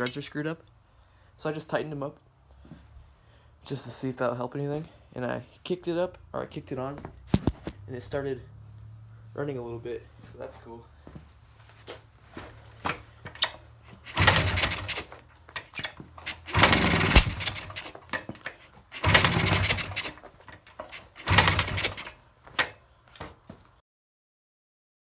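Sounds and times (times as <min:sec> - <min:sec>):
dirt bike engine firing in bursts: 0:14.0 - 0:15.1, 0:16.2 - 0:17.9, 0:18.9 - 0:20.2, 0:21.0 - 0:22.1.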